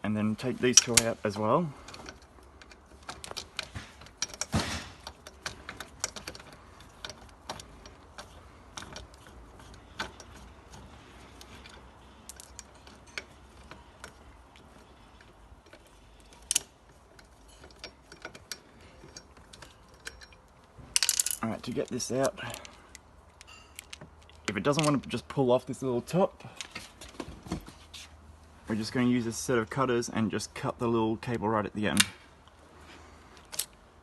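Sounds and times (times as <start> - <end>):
hand tools clicking on bolts: 0.4 - 25.2.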